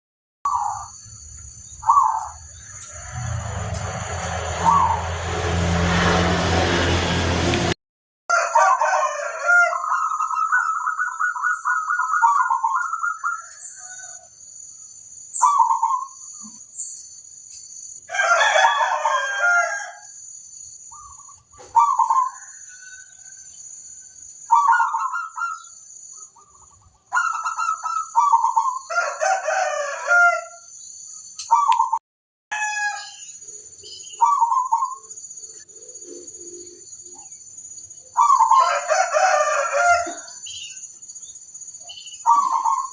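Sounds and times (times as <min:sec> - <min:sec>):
doves cooing: 0:21.0 - 0:22.6, 0:35.7 - 0:37.3, 0:38.2 - 0:40.4, 0:42.2 - 0:42.9.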